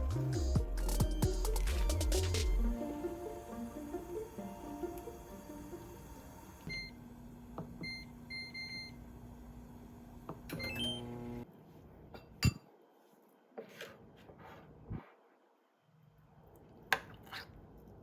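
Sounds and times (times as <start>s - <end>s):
appliance button beeps: 6.7s - 7.0s, 7.8s - 9.0s, 10.5s - 11.2s.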